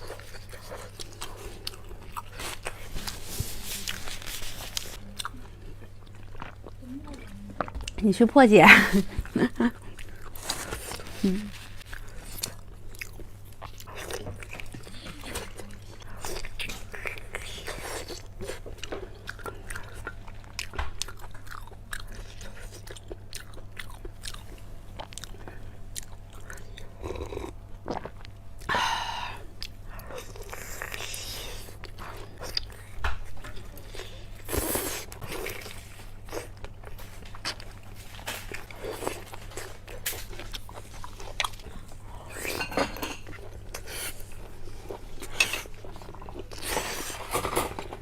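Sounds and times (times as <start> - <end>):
close chewing and crunching: 0.0 - 48.0.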